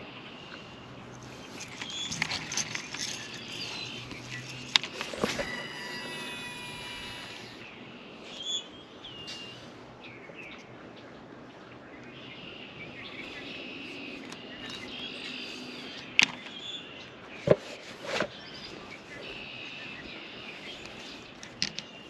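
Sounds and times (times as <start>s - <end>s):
birds chirping: 0.0s - 22.0s.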